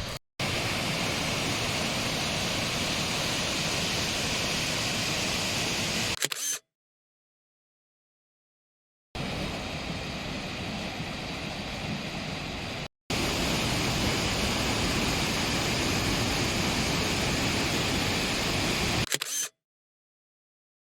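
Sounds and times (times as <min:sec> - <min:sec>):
waterfall rushing: 0:12.0 - 0:19.0.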